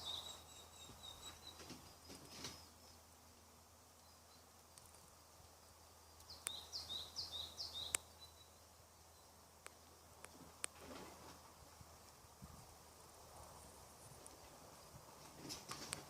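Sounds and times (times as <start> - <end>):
bird chirping faintly: 0.0 - 3.2, 3.8 - 10.2
quiet steady hum: 0.0 - 16.0
sharp clicks: 7.8 - 8.1.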